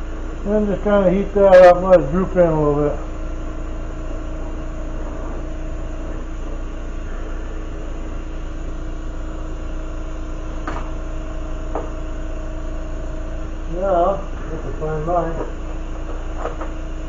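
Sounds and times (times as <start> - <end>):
low hum: 0.0 - 17.0.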